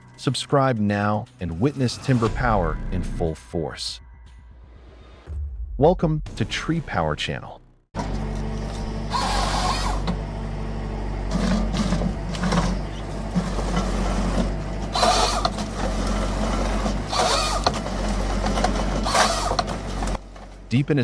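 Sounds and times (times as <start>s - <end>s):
heavy machine engine running: 8.0s - 21.0s.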